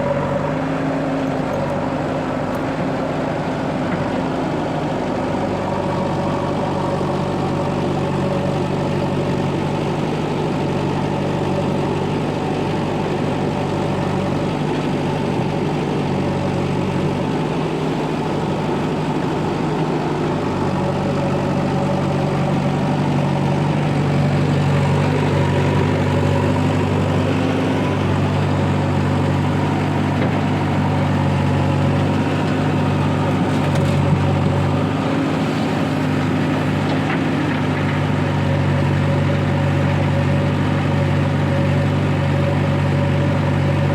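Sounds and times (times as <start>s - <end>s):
heavy machinery diesel engine: 0.0s - 43.9s.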